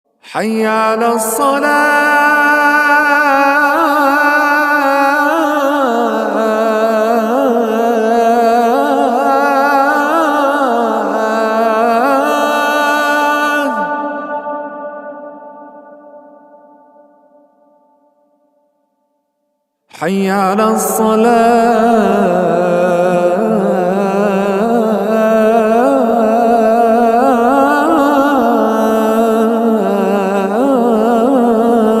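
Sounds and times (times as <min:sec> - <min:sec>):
call to prayer chanting: 0:00.2 - 0:17.0, 0:19.9 - 0:32.0.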